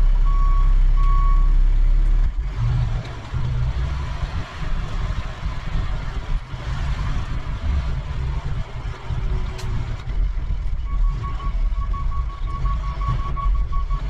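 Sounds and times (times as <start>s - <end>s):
truck engine running: 0.0s - 14.0s
backup alarm beeping: 10.8s - 14.0s.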